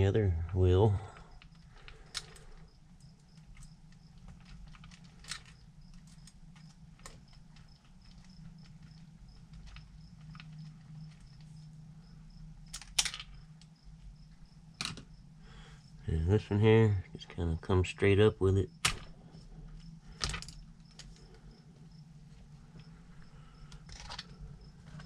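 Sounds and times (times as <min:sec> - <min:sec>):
faint low hum: 0:00.0 - 0:25.0
clicks and rattles of small parts: 0:00.5 - 0:11.7, 0:12.6 - 0:13.8, 0:14.8 - 0:15.1, 0:18.8 - 0:21.4, 0:23.7 - 0:25.0.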